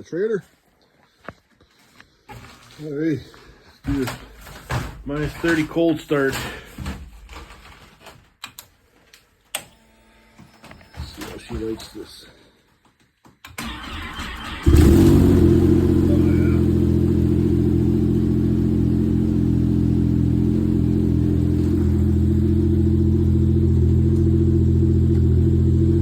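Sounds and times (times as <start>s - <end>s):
snowmobile engine starting: 13.6s - 26.0s.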